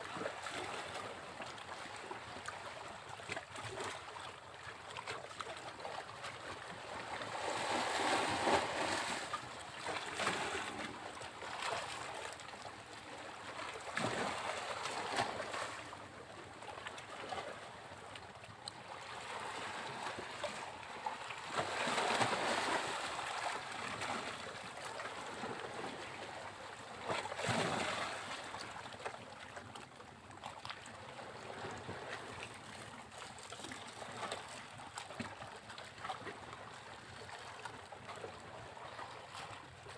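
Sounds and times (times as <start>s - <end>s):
sea waves breaking on beach: 6.8s - 16.0s, 19.0s - 28.7s.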